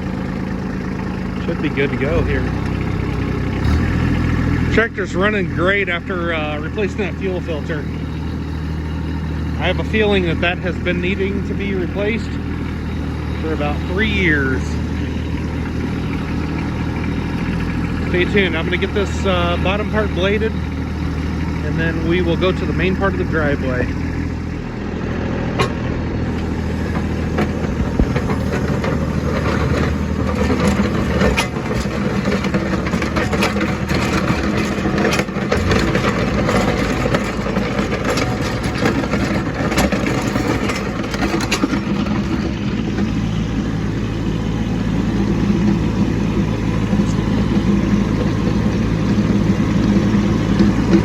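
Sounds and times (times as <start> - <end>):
tractor diesel engine running: 0.0 - 51.0
knocks and clatter: 25.4 - 51.0.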